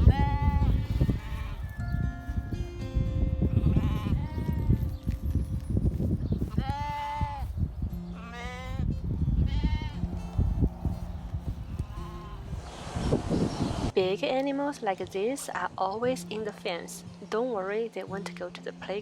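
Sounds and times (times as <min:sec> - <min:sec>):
farm animals bleating: 0:00.0 - 0:01.9, 0:03.4 - 0:04.8, 0:06.4 - 0:10.2, 0:11.8 - 0:12.5
steady low rumble: 0:08.8 - 0:14.0.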